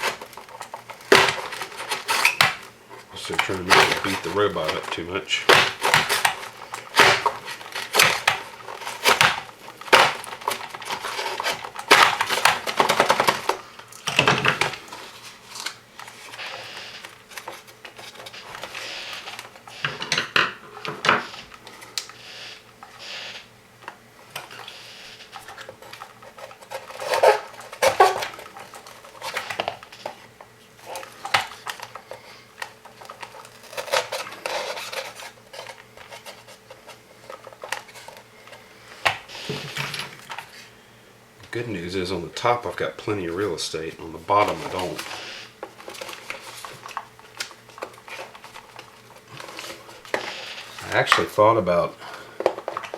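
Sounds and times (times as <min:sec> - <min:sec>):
small hard parts clicking and knocking: 0:52.3 - 0:52.9.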